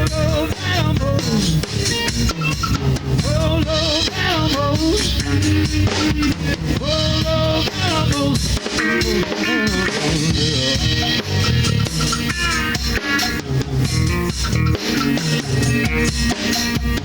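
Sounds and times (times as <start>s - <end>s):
rock band playing: 0.0s - 17.0s.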